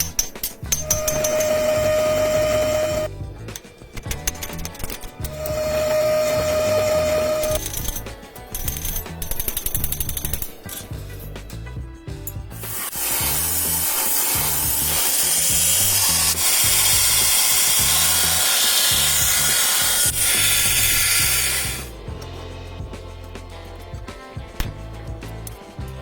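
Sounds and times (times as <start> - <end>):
power tool grinding steel: 0.0 - 3.1, 4.7 - 11.0, 12.5 - 22.0
background music with bass line: 0.0 - 18.4, 19.0 - 26.0.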